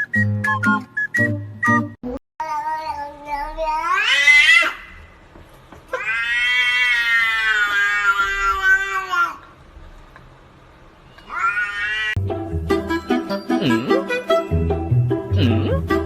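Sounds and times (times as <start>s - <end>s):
cat meowing: 2.6s - 4.9s, 5.9s - 9.4s, 11.2s - 12.2s.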